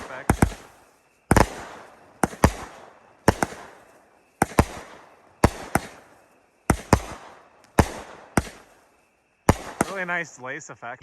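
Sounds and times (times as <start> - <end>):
firework cake bangs: 0.0 - 10.3.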